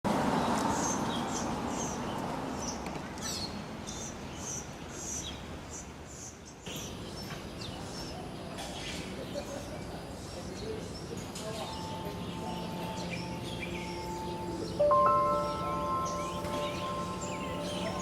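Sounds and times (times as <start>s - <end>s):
steady background hiss: 3.6s - 18.0s
birds chirping: 9.8s - 18.0s.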